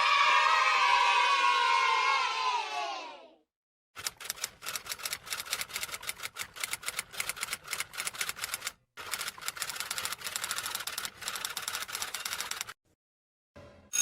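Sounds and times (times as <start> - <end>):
typewriter keys clacking: 4.0 - 12.7.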